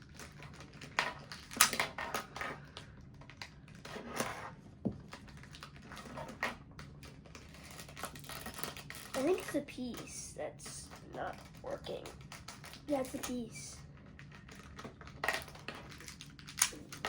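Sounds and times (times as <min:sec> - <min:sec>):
plastic puzzle cube clicking: 0:14.2 - 0:17.0.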